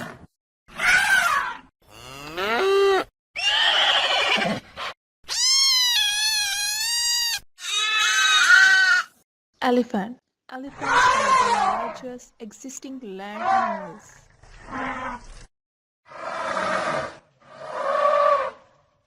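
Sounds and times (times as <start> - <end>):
animal calls: 2.3 - 9.2, 10.7 - 12.0.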